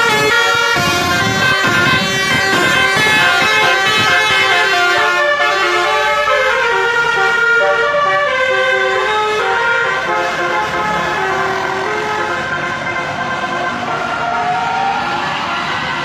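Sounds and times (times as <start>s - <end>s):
air horns playing tune: 0.0s - 14.1s.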